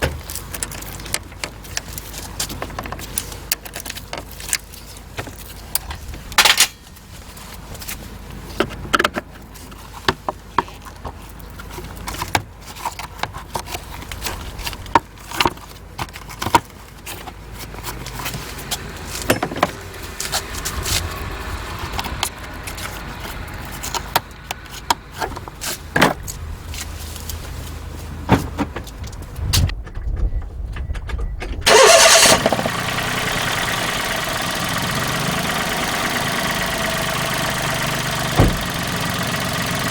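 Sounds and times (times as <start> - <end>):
handling clicks and knocks: 0.0 - 6.8
car engine starting and idling: 18.1 - 26.9, 31.3 - 39.9.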